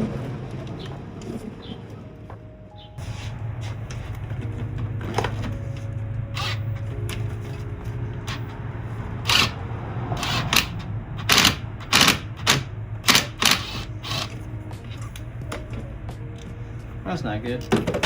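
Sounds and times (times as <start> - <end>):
hand tools striking metal: 6.4 - 7.6, 9.2 - 9.6, 10.2 - 15.8.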